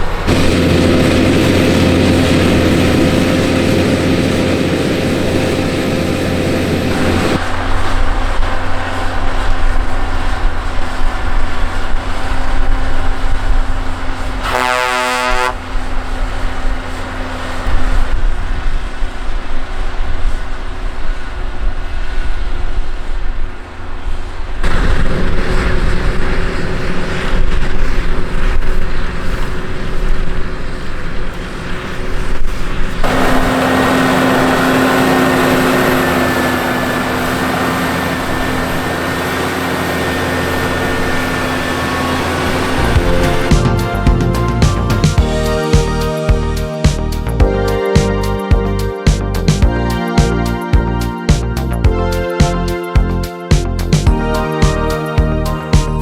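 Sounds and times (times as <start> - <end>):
tractor diesel engine under load: 0.0 - 21.4, 23.6 - 56.0
pitched tone: 33.1 - 56.0.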